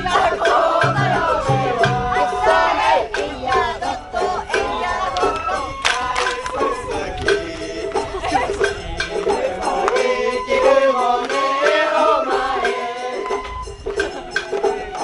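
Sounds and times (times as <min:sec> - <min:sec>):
drum strikes: 0:00.0 - 0:03.3
wavering melody: 0:00.0 - 0:15.0.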